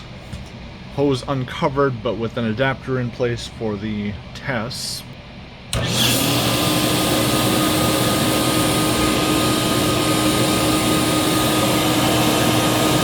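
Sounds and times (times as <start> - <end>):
vacuum cleaner running: 5.7 - 13.0.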